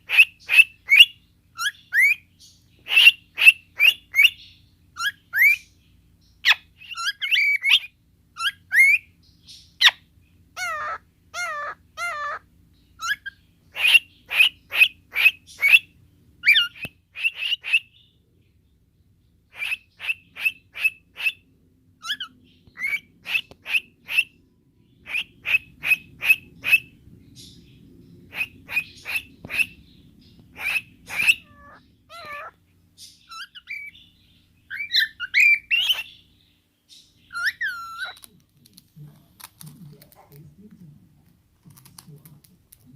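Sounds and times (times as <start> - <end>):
cockatiel sharp chirps: 0.0 - 5.7, 6.4 - 10.0, 13.0 - 18.1, 30.4 - 34.1, 34.7 - 36.3.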